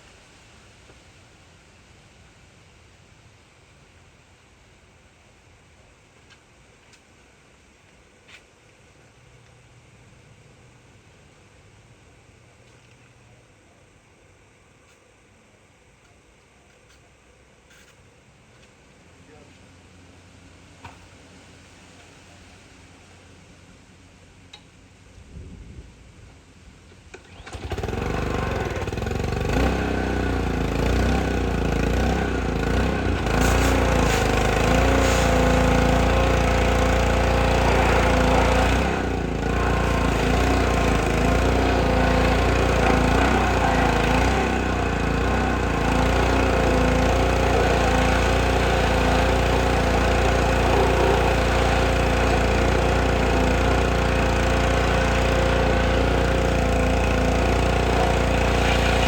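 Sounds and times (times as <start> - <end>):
pressure washer engine running: 27.2 - 59.0.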